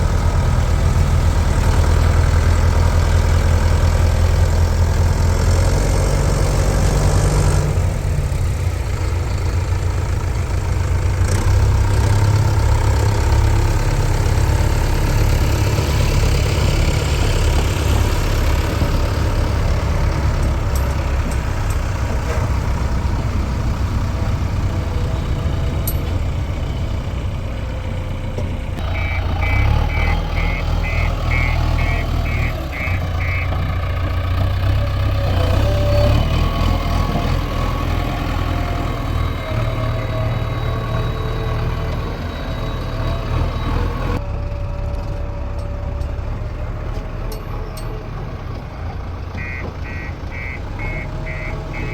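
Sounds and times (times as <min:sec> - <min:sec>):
heavy diesel engines running: 0:00.0 - 0:51.9
high reversing alarm beeps: 0:28.8 - 0:33.5, 0:49.4 - 0:51.9.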